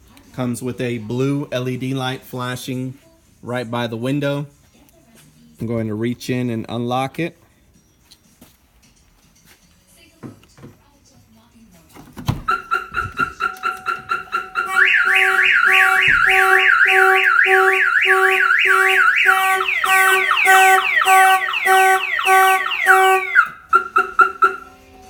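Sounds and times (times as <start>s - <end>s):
car alarm chirps: 12.4s - 25.0s
car alarm siren: 12.5s - 25.0s
car horn honking: 12.5s - 25.0s.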